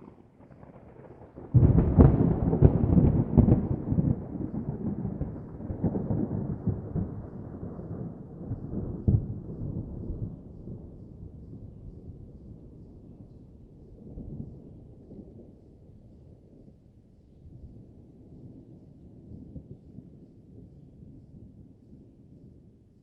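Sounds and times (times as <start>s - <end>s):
thunder rumble: 0.0s - 15.7s
thunder crack: 0.4s - 9.9s.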